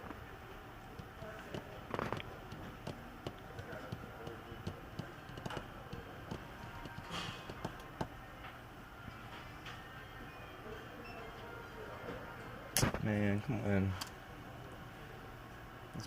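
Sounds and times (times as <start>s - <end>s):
laptop keys clicking: 1.0s - 8.1s.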